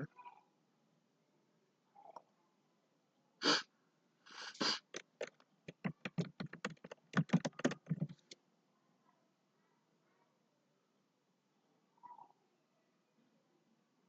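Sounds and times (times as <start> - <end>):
person sniffing: 3.4 - 3.7, 4.3 - 5.1
keyboard and mouse clicks: 4.8 - 8.4.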